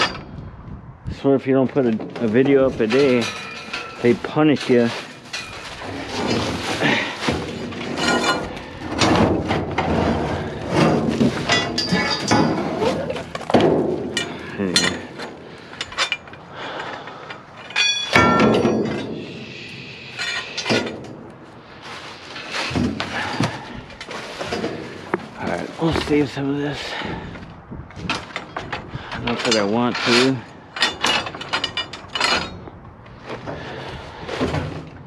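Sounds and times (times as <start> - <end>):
scrap metal clanking: 1.8 - 35.0
metal piece ringing: 17.7 - 19.3.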